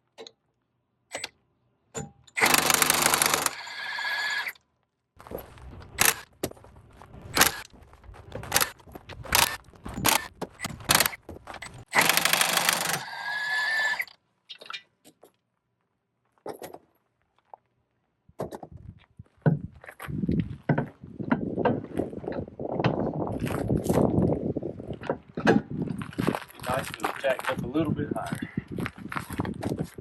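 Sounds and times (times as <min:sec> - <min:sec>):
impact wrench burst: 0:02.4 - 0:04.6, 0:06.0 - 0:06.3, 0:07.3 - 0:07.7, 0:08.5 - 0:14.1.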